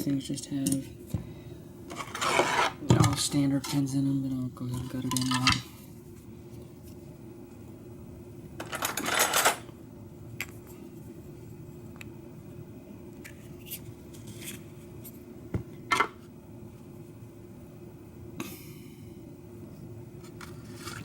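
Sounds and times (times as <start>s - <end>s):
metal lock parts rattling clatter: 8.6s - 9.6s.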